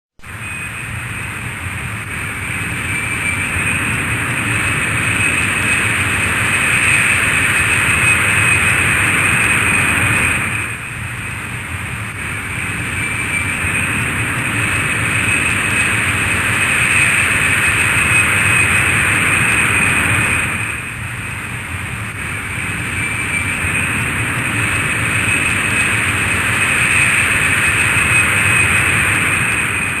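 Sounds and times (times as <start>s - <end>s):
airplane roar with high whine: 0.2s - 30.0s.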